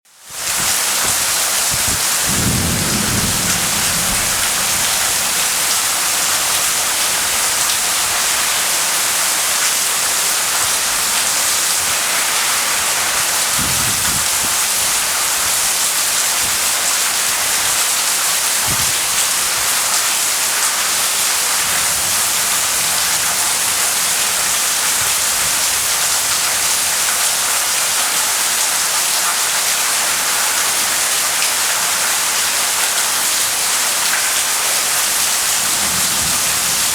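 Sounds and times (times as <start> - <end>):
heavy rain pouring: 0.1 - 36.9
low rumbles of thunder: 1.2 - 8.4, 35.5 - 36.9.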